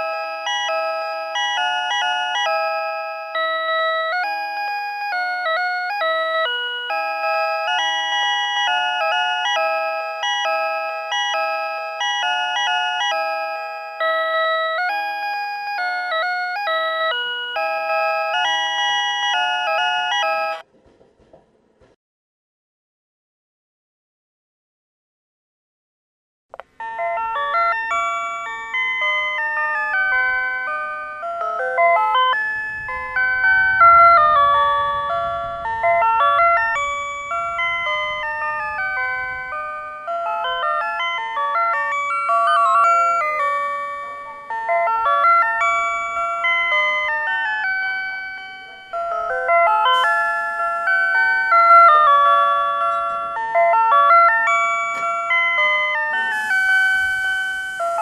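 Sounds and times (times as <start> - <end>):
looping electronic chime tune: 0.0 - 20.6, 26.8 - 58.0.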